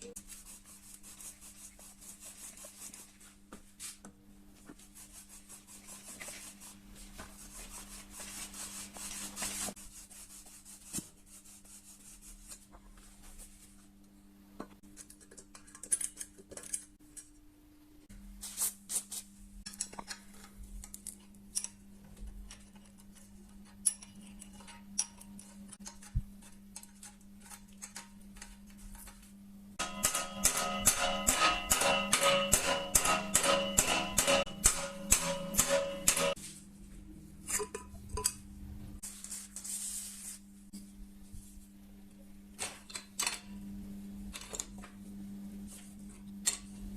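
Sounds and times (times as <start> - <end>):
steady low hum: 17.0 - 46.9
scrubbing metal parts: 29.8 - 36.4.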